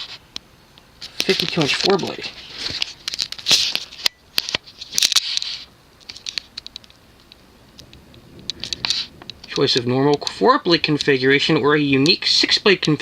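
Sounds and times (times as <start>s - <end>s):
light ticks: 6.0s - 11.2s
sharp clicks and taps: 6.0s - 11.2s.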